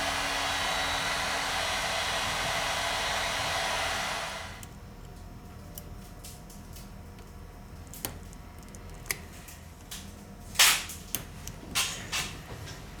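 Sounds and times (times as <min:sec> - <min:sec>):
hot-air gun blowing: 0:00.0 - 0:04.6.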